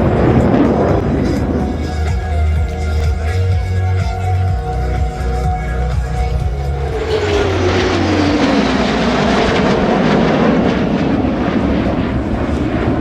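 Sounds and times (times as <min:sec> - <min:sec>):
fighter jet passing overhead: 0:06.2 - 0:13.0.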